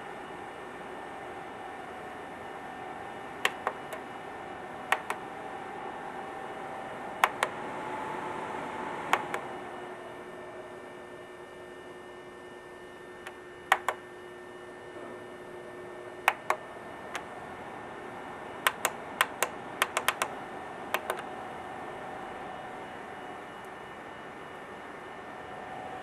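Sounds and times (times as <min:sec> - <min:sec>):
steady hum: 0:00.0 - 0:26.0
sharp clicks and taps: 0:03.4 - 0:04.0, 0:04.9 - 0:05.2, 0:07.2 - 0:07.6, 0:09.1 - 0:09.4, 0:13.3 - 0:14.0, 0:16.3 - 0:17.3, 0:18.6 - 0:20.3, 0:21.0 - 0:21.2.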